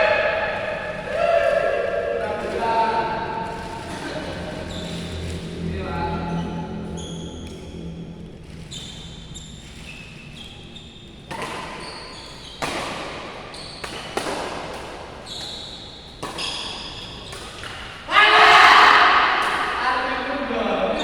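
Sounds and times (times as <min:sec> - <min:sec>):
shoes squeaking on court floor: 0:02.3 - 0:05.6, 0:06.3 - 0:18.0
rackets hitting shuttlecock: 0:11.2 - 0:18.1, 0:19.0 - 0:19.8.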